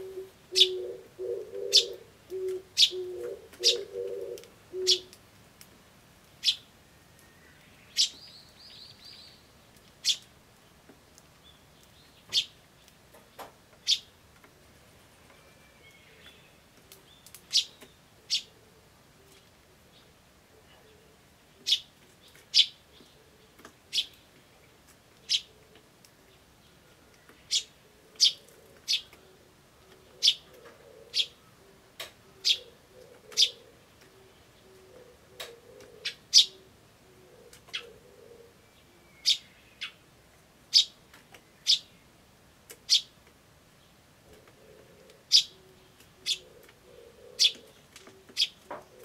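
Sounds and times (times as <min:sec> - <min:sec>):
dove cooing faintly: 0:00.0 - 0:05.2, 0:13.8 - 0:40.1, 0:44.2 - 0:49.0
sparrow chick chirping: 0:00.5 - 0:04.0, 0:06.4 - 0:06.6, 0:07.9 - 0:09.4, 0:10.0 - 0:10.3, 0:21.6 - 0:22.8, 0:27.5 - 0:29.2, 0:30.1 - 0:30.5, 0:32.4 - 0:33.6, 0:35.8 - 0:36.7, 0:39.2 - 0:40.0, 0:40.7 - 0:41.0, 0:41.6 - 0:41.9, 0:42.8 - 0:43.1, 0:45.2 - 0:48.6.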